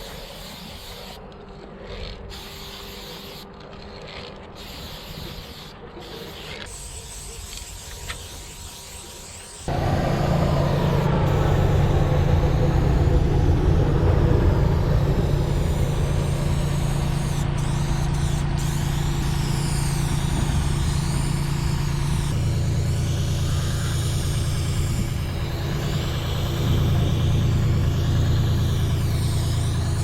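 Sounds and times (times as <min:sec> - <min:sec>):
engine idling: 0:09.7 - 0:30.0.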